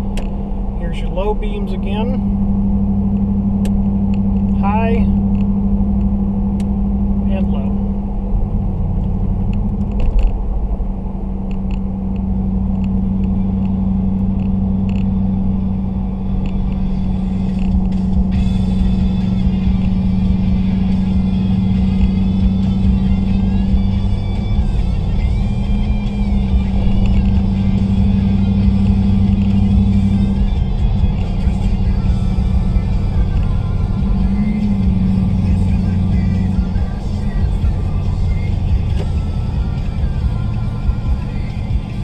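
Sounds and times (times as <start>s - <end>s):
engine hum in cabin: 0.0s - 42.0s
low road rumble: 0.0s - 42.0s
music from car stereo: 13.0s - 42.0s.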